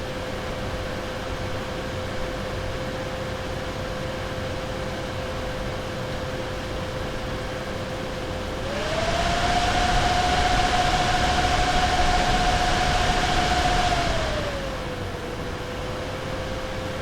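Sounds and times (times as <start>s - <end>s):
graphics card fans whirring: 8.3s - 16.3s.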